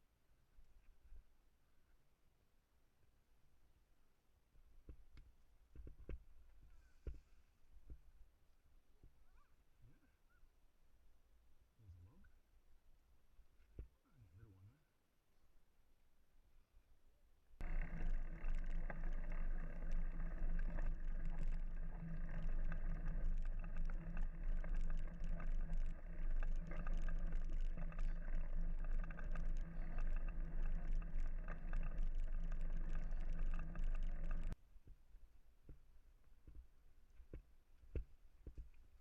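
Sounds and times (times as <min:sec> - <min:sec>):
bike tyres rolling on dirt: 0:17.6 - 0:34.6
small rattling clicks: 0:17.6 - 0:34.6.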